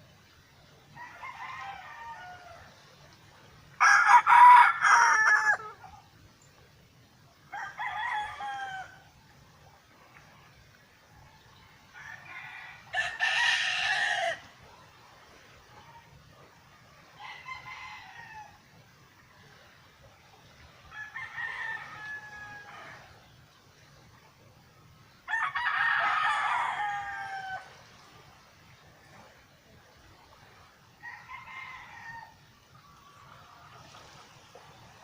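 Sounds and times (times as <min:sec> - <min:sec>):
roosters crowing: 0:01.0 - 0:02.8, 0:03.8 - 0:05.9, 0:07.5 - 0:09.1, 0:11.9 - 0:14.5, 0:17.2 - 0:18.6, 0:20.9 - 0:23.2, 0:25.3 - 0:27.8, 0:31.0 - 0:32.5.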